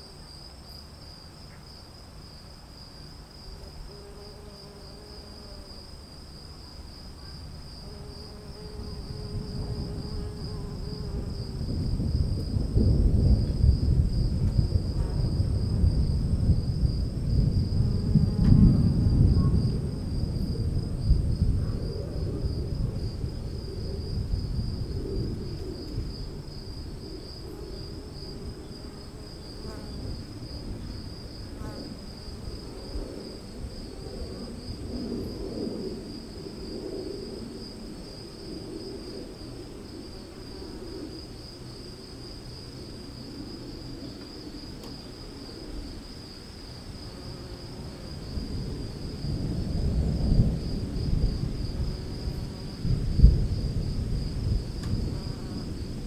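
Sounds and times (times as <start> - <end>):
crickets chirping: 0.0 - 56.0
low rolling thunder: 8.9 - 40.2, 47.0 - 56.0.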